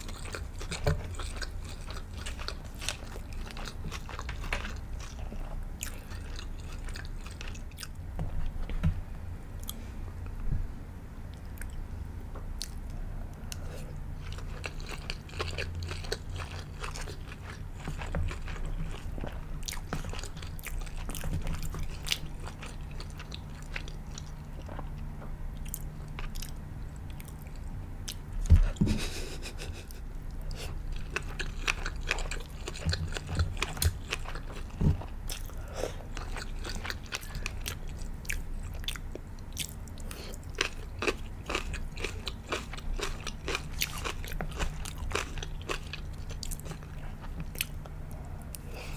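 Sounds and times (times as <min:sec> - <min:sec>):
chewing and biting food: 0:00.0 - 0:08.7, 0:12.6 - 0:48.9.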